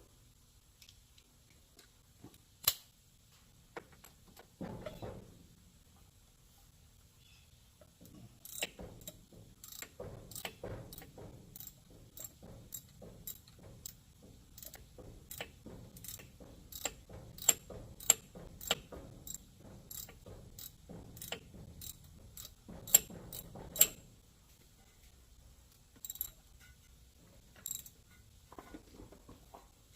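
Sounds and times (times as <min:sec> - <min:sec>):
ratchet wrench clicking: 0:08.4 - 0:14.0, 0:14.6 - 0:24.0.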